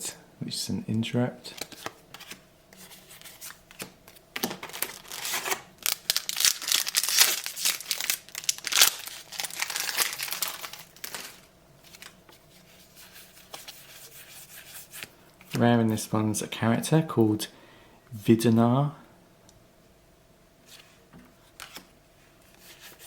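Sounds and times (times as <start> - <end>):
wrapper crinkling and tearing: 4.4 - 12.2.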